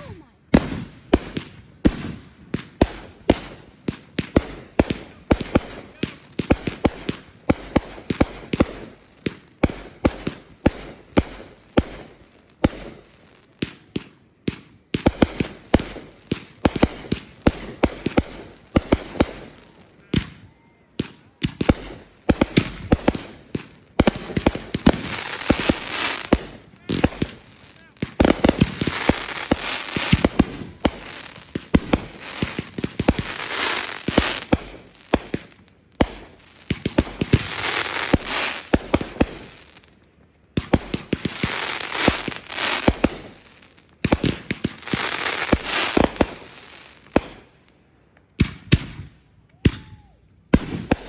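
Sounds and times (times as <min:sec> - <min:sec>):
fireworks bangs: 0:00.0 - 0:47.5, 0:48.4 - 0:51.0
fireworks crackling: 0:00.0 - 0:51.0.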